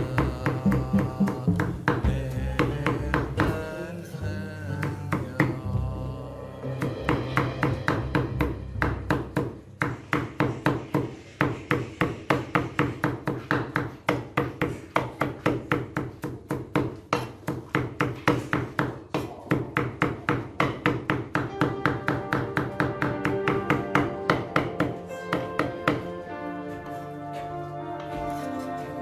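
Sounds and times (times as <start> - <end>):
background music: 0.0 - 16.1, 19.8 - 29.0
knife chopping on cutting board: 6.8 - 26.1.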